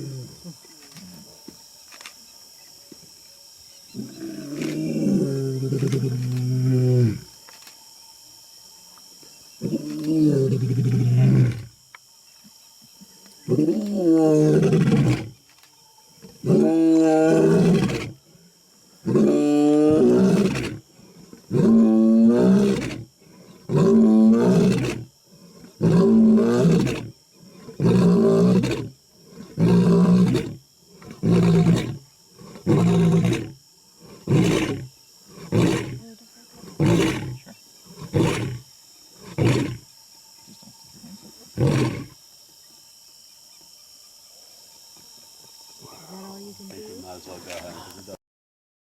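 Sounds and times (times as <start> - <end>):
lion roaring: 13.5 - 15.4, 16.4 - 18.2, 19.0 - 20.8, 21.4 - 36.0, 36.6 - 38.6, 39.2 - 39.8, 41.6 - 42.1.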